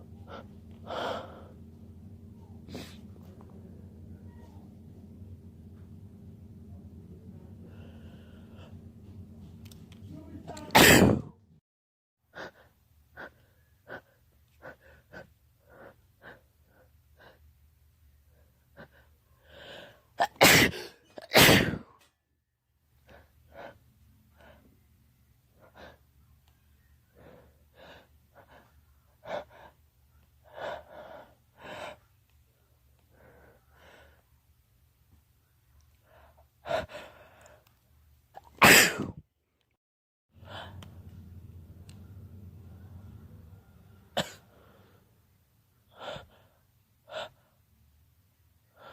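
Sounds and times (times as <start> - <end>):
person sneezing: 10.5 - 11.4, 20.2 - 22.0, 38.4 - 39.2.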